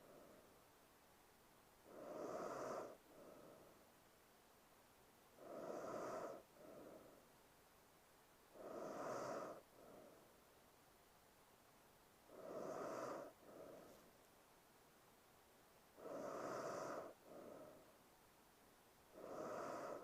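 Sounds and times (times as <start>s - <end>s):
woman breathing heavily asleep: 0.0s - 0.7s, 1.8s - 4.0s, 5.3s - 7.5s, 8.5s - 10.6s, 12.2s - 14.2s, 15.9s - 18.1s, 19.1s - 20.0s.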